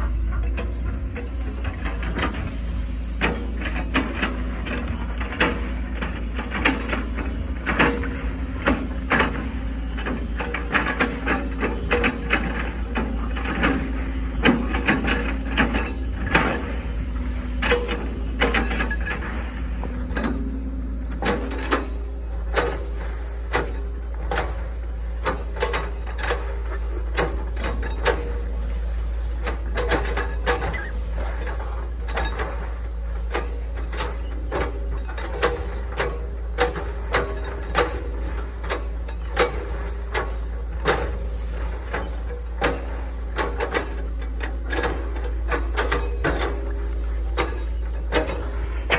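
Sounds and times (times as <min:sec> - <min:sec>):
excavator engine drone: 0:00.0 - 0:48.9
machine knocks and clanks: 0:00.0 - 0:48.9.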